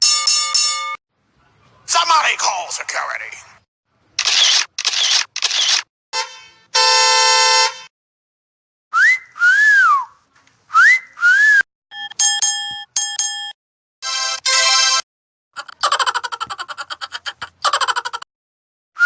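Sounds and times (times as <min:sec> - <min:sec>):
two-note whistle: 0:09.0 - 0:10.2.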